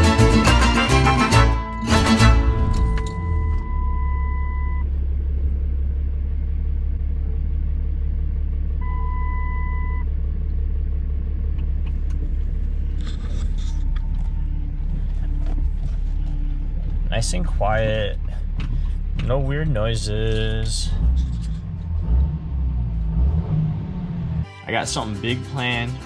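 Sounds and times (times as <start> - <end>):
diesel truck engine running: 0.0 - 26.0
brief high tone: 0.4 - 4.6.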